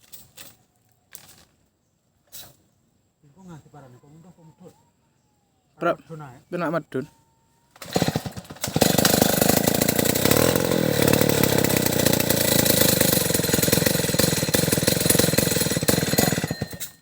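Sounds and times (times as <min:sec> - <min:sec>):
chainsaw running: 0:07.8 - 0:17.0.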